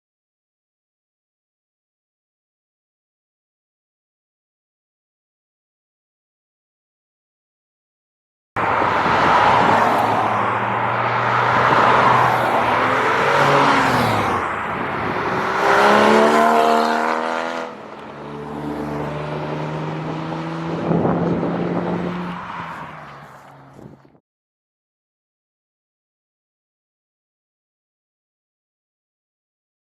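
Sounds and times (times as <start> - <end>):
sports car engine revving: 15.1 - 22.3.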